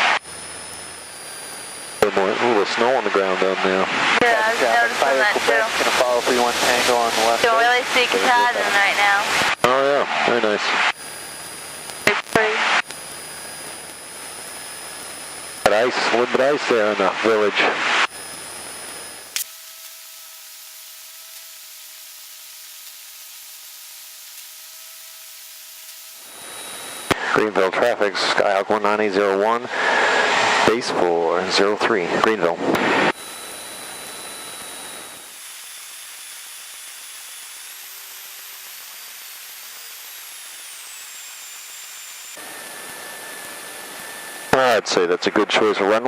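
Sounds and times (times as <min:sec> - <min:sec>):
faint even whine: 0:00.0 - 0:46.0
intercom hiss: 0:02.0 - 0:10.9.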